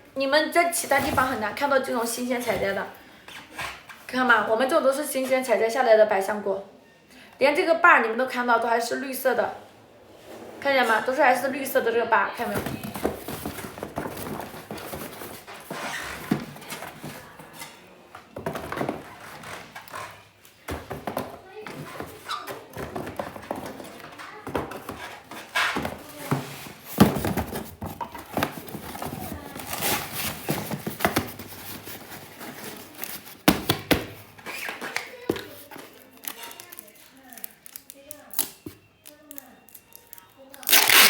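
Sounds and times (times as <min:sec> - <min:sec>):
handling sounds: 0:12.3 - 0:41.0
rustling of handled fruit: 0:26.0 - 0:33.4.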